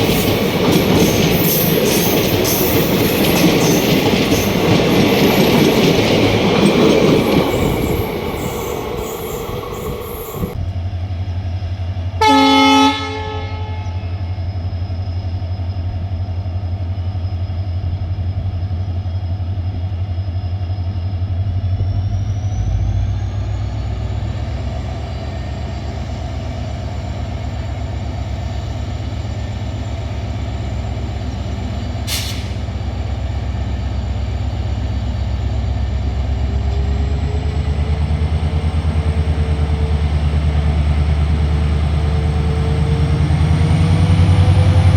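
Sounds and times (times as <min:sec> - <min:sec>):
diesel locomotive engine humming: 0:00.0 - 0:44.9
train horn toot: 0:12.2 - 0:14.3.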